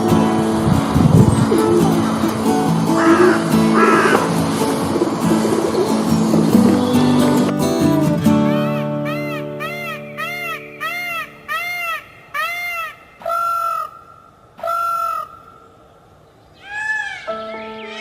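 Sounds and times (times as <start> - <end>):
bird honking calls: 1.5 - 7.6, 8.2 - 15.7.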